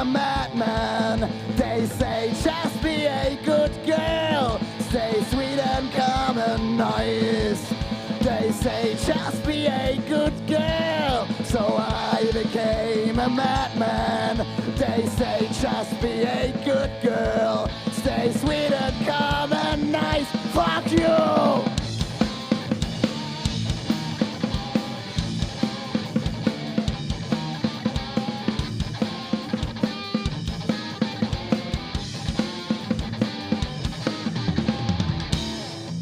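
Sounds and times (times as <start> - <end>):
person singing: 0.0 - 21.8
drum kit beat: 0.0 - 36.0
live rock band playing: 0.0 - 36.0.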